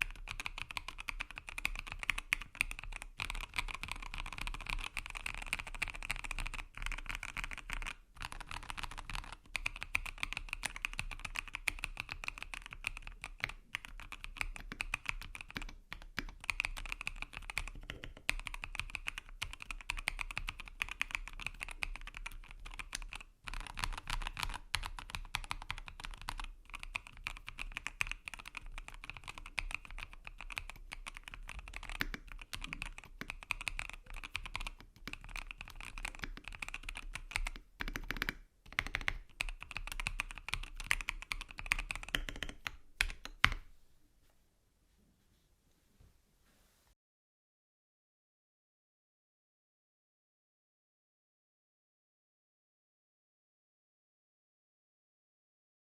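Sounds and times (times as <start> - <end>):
mechanical keyboard typing: 0.0 - 43.6.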